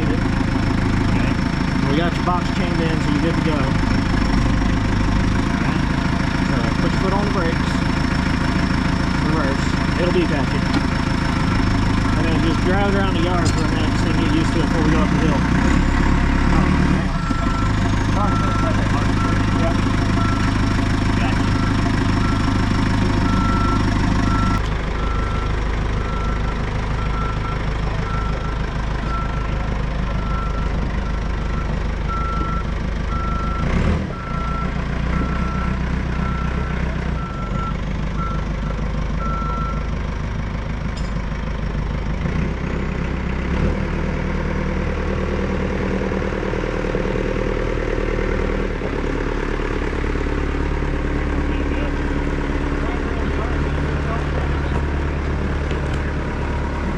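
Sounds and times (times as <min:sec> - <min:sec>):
diesel engine running: 0:00.0 - 0:56.9
reverse alarm beeping: 0:17.1 - 0:22.6, 0:23.2 - 0:29.5, 0:30.2 - 0:38.4, 0:39.2 - 0:39.9.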